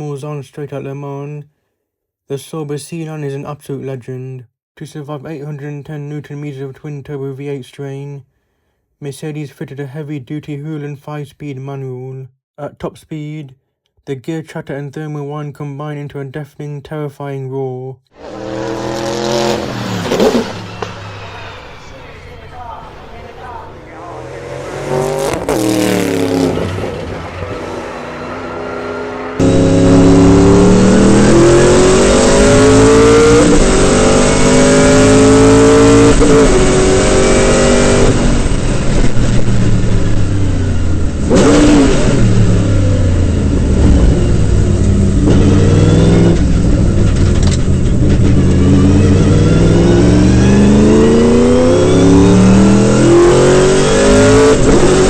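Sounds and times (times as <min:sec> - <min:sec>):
race car engine at full throttle: 0:18.2 - 0:55.0.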